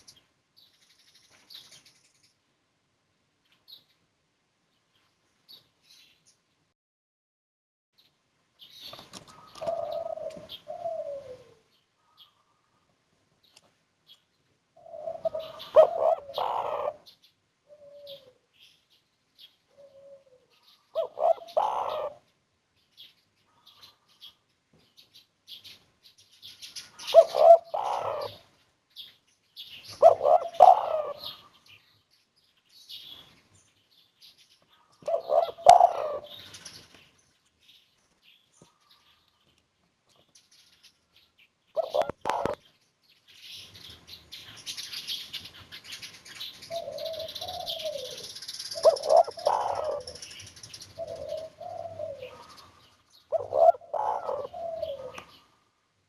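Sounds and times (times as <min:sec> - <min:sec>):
small birds chirping: 0:00.0 - 0:06.7, 0:08.0 - 0:56.0
dove cooing: 0:09.3 - 0:12.2, 0:14.8 - 0:17.1, 0:17.7 - 0:18.4, 0:19.7 - 0:22.2, 0:27.0 - 0:28.4, 0:29.9 - 0:31.5, 0:35.0 - 0:36.4, 0:41.8 - 0:42.6, 0:46.7 - 0:50.2, 0:51.0 - 0:55.5.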